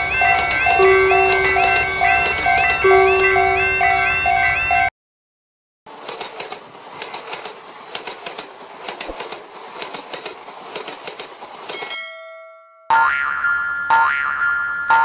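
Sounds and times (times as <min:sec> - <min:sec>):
train wheels clacking over rail joints: 0:00.0 - 0:03.2, 0:05.9 - 0:12.2
train rushing rumble: 0:00.0 - 0:04.7, 0:05.9 - 0:12.0
steady pitched tone: 0:00.0 - 0:04.9.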